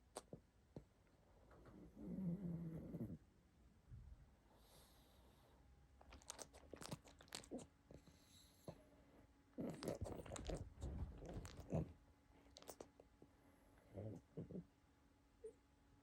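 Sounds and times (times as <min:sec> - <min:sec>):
dog chewing crunchy food: 0:06.0 - 0:07.6, 0:09.7 - 0:11.9, 0:12.5 - 0:13.0.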